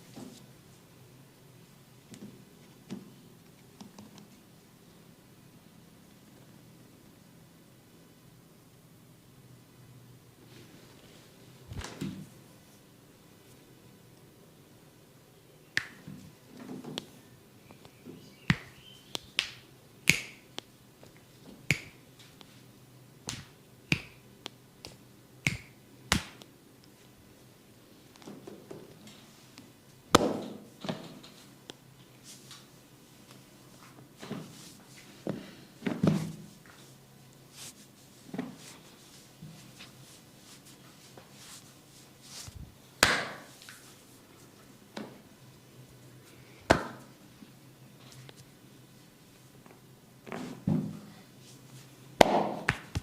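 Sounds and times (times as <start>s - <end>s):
hands slapping bare skin: 15.8s - 16.0s, 18.5s - 20.7s, 21.7s - 22.5s, 23.2s - 26.5s, 42.4s - 43.8s, 46.7s - 47.0s, 52.2s - 53.0s
skin cracking snaps: 17.8s - 20.7s.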